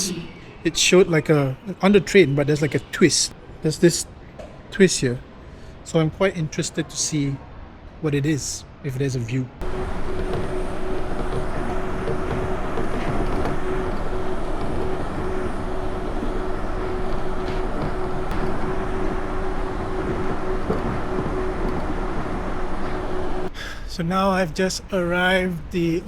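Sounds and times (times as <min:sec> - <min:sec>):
constant hum: 0:00.0 - 0:26.0
train car rumble and hiss: 0:09.6 - 0:26.0.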